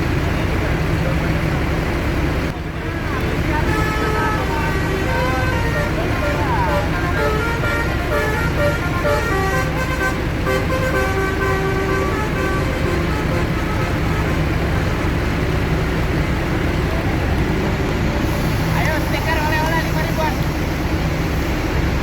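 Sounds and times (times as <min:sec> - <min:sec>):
bus engine rumble: 0:00.0 - 0:22.0
musical bus horn: 0:03.0 - 0:15.2.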